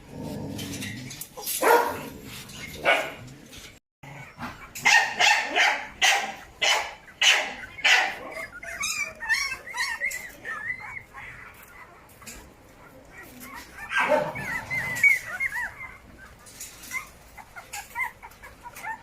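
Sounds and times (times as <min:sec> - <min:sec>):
dogs barking: 0:01.5 - 0:03.3, 0:04.1 - 0:16.4
dog whining and whimpering: 0:04.1 - 0:04.8, 0:07.5 - 0:19.0.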